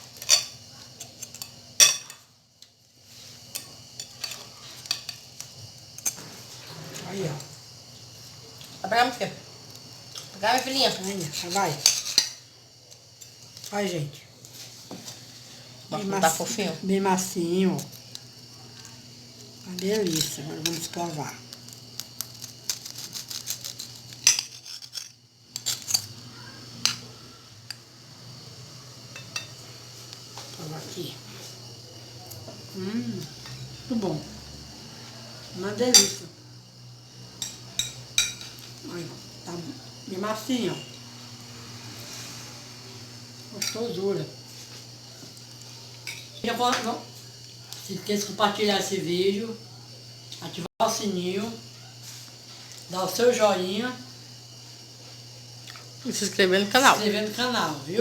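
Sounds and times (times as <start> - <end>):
utensils clinking against pan and dishes: 0.0 - 2.3, 3.5 - 7.5, 10.2 - 12.5, 22.7 - 26.2, 35.4 - 36.2, 37.4 - 38.8, 43.5 - 44.0, 46.0 - 47.0
cutlery and dishes clinking: 0.2 - 2.2, 22.7 - 26.2.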